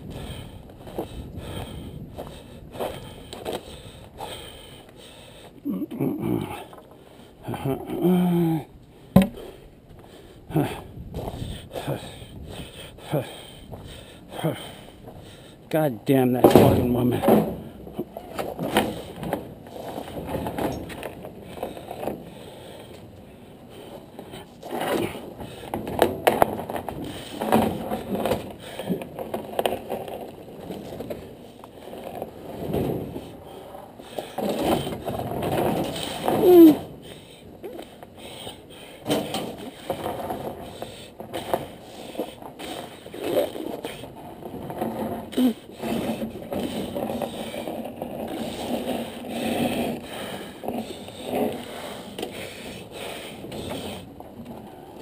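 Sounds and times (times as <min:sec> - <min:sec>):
sharp knocks: 0:09.1 - 0:09.4
hard objects scraping and clattering: 0:16.4 - 0:37.1, 0:39.0 - 0:55.0.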